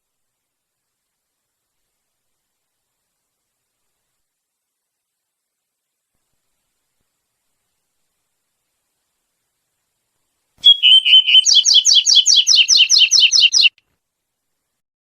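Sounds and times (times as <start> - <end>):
bird singing sharp notes: 10.6 - 13.8.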